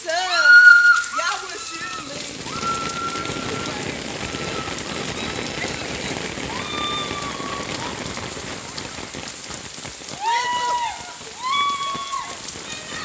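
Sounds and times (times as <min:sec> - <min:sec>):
heavy rain: 0:00.0 - 0:13.0
faint high voice-like calls: 0:00.3 - 0:05.6.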